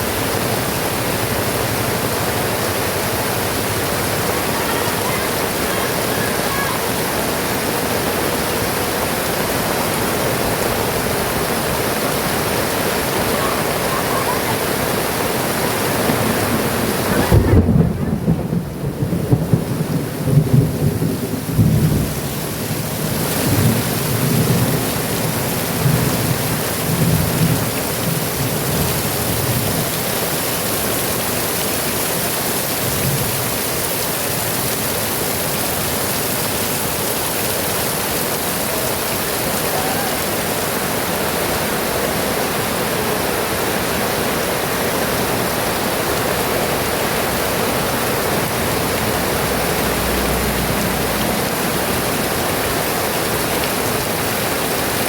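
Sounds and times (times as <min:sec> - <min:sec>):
heavy rain pouring: 0:00.0 - 0:55.0
thunderclap rumbling: 0:10.2 - 0:29.8.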